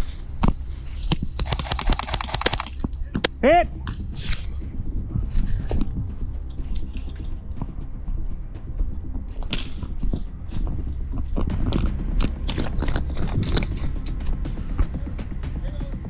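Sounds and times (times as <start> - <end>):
footsteps through dry leaves: 0.0 - 1.7
low microphone rumble: 2.7 - 16.0.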